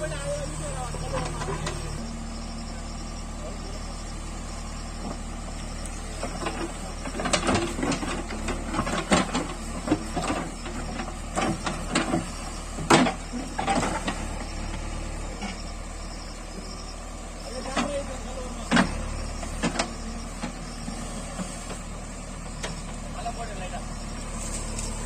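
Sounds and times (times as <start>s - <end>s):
diesel engine running: 0.0s - 25.0s.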